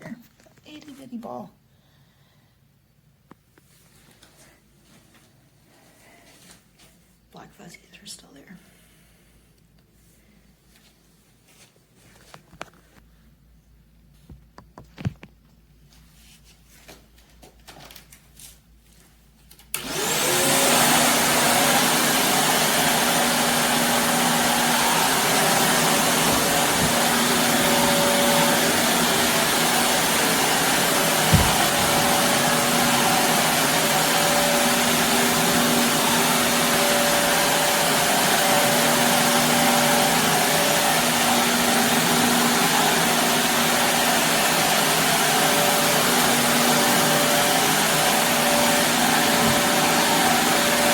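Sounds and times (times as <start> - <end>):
vacuum cleaner motor whining: 19.8 - 50.9
short knock: 31.3 - 31.9.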